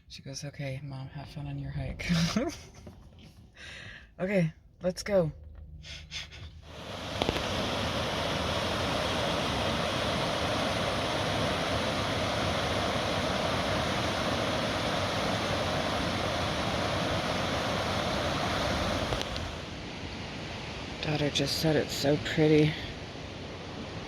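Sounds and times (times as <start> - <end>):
flowing water rushing: 6.6 - 24.0.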